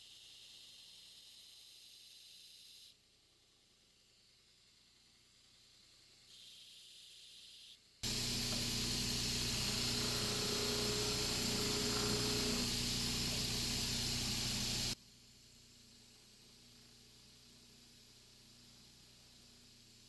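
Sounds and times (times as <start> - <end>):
power grinder grinding steel: 8.0 - 15.0.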